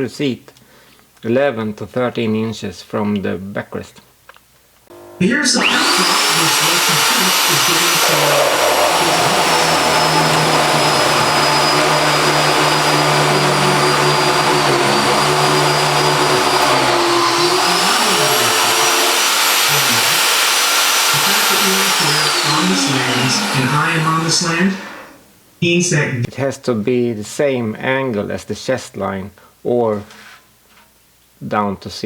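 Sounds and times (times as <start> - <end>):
high-speed electric motor whine: 4.9 - 24.6.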